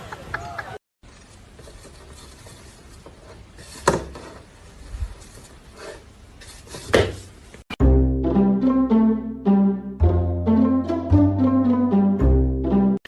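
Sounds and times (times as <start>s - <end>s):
background noise: 0.0s - 7.8s.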